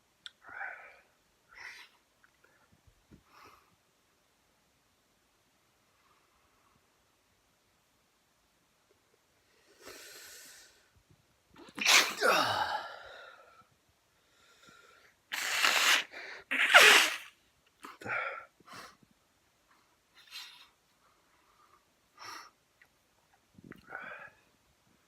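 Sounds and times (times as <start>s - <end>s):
man sneezing: 11.7s - 13.0s, 15.3s - 17.3s
short breathy bursts: 14.3s - 17.3s.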